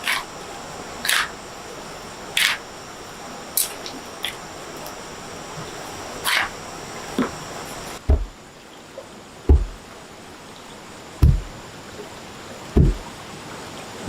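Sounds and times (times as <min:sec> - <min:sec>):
dull heavy thuds: 0:08.0 - 0:08.4, 0:09.5 - 0:09.8, 0:11.2 - 0:11.6, 0:12.8 - 0:13.1.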